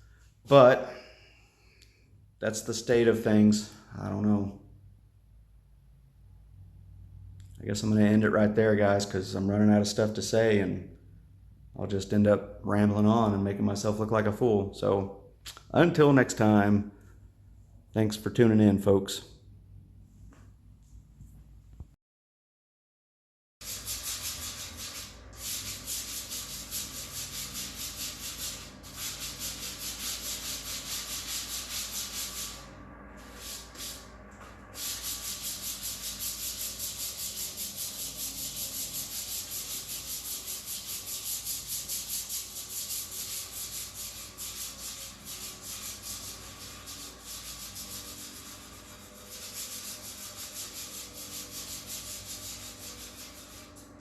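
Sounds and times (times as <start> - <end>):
sandpaper rubbing on car panel: 23.6 - 32.6, 34.8 - 54.0.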